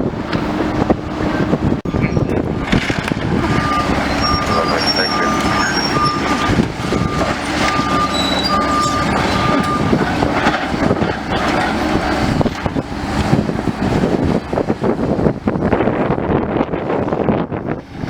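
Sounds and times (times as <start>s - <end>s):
excavator engine running: 0.0s - 18.0s
reversing alarm beeps: 1.9s - 12.0s
crunching and clattering debris: 1.9s - 14.1s.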